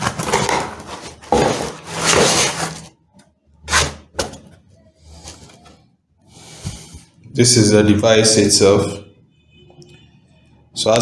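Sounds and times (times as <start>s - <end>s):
packaging rustling: 0.0s - 3.0s.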